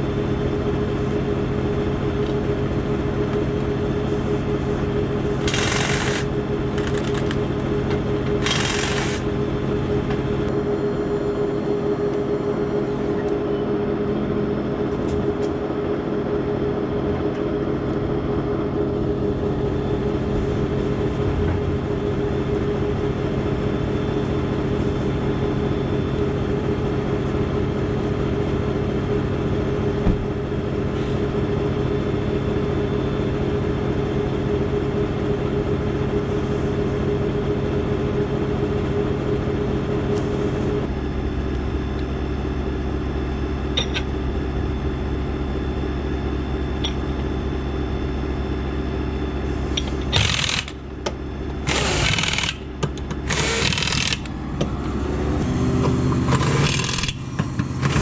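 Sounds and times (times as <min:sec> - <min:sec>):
machine motor humming: 0:00.0 - 0:26.7, 0:39.0 - 0:58.0
power tool bursts: 0:05.4 - 0:07.2, 0:08.4 - 0:09.3, 0:50.1 - 0:50.8, 0:51.6 - 0:52.6, 0:53.2 - 0:54.3, 0:56.3 - 0:57.2.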